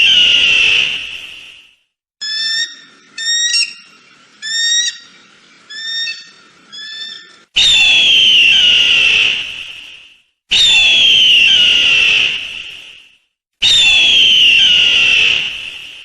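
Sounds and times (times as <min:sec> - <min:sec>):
eagle calls: 0:02.2 - 0:07.4.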